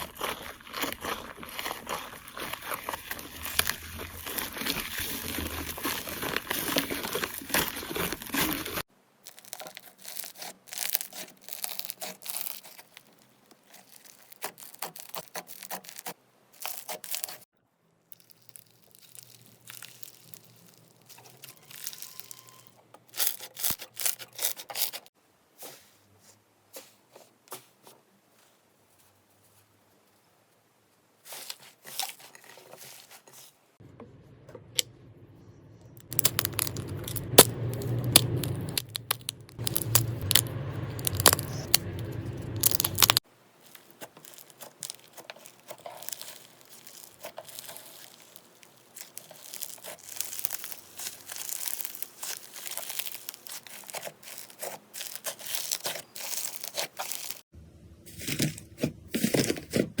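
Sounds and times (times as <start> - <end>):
slime squeezed and stretched: 0.0 - 17.4, 18.2 - 25.1, 36.0 - 57.4.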